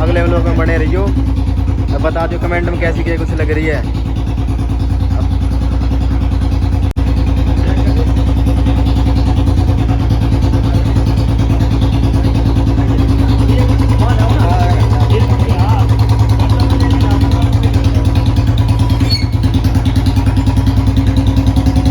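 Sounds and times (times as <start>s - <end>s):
motorcycle engine thumping: 0.0s - 21.9s.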